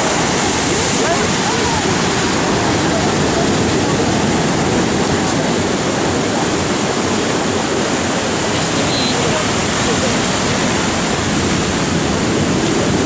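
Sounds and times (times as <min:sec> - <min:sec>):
heavy waves breaking: 0:00.0 - 0:13.0.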